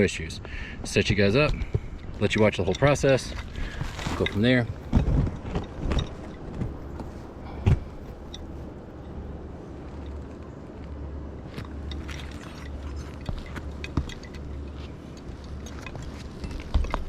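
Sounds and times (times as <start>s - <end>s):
low steady rumble: 0.0s - 17.0s.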